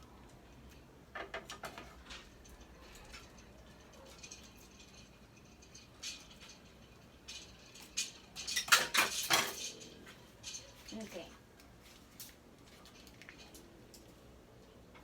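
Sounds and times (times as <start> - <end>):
utensils clattering: 1.3 - 11.3.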